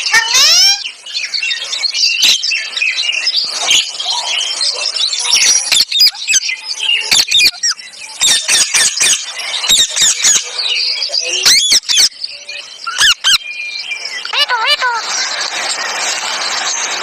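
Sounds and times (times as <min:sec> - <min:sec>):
parrot squawking and screeching: 0:00.0 - 0:00.9, 0:01.6 - 0:02.4, 0:05.3 - 0:12.1, 0:12.8 - 0:13.4, 0:14.2 - 0:16.6
parrot whistled calls: 0:00.0 - 0:00.9, 0:05.3 - 0:10.5, 0:11.4 - 0:13.6, 0:14.2 - 0:15.2.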